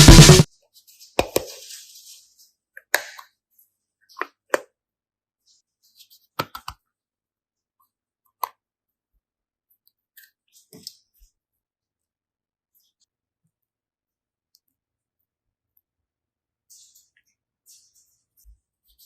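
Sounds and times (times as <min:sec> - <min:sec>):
modelling clay clicks and plops: 0:02.7 - 0:04.9, 0:06.3 - 0:07.0, 0:07.8 - 0:08.8.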